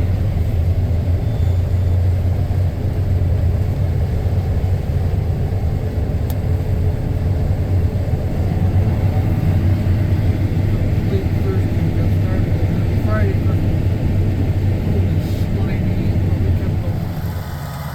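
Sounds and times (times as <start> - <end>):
diesel engine rumble: 0.0 - 17.9.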